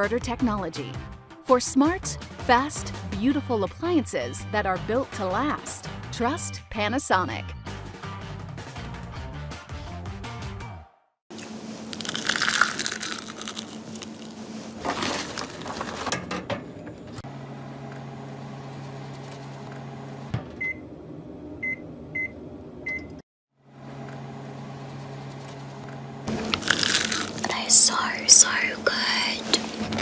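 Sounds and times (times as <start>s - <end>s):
microwave oven humming: 11.3s - 30.0s
rustling and handling: 11.5s - 16.2s, 29.1s - 30.0s.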